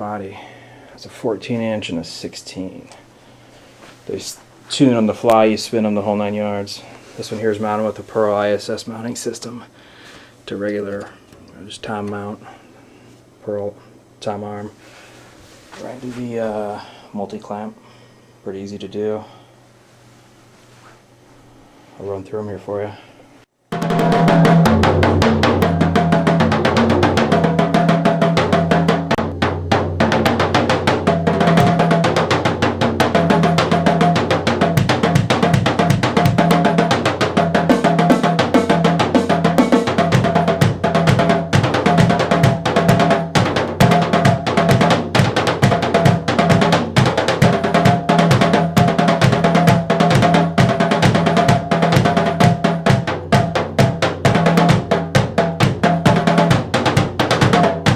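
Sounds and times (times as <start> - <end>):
drum kit fast groove: 23.7 - 57.9.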